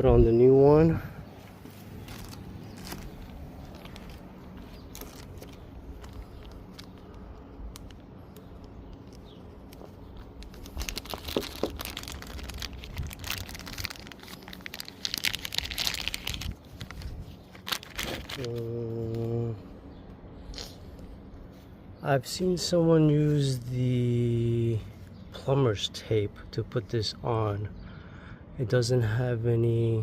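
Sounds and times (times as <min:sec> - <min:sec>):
plastic packaging crinkling: 0:01.6 - 0:18.7.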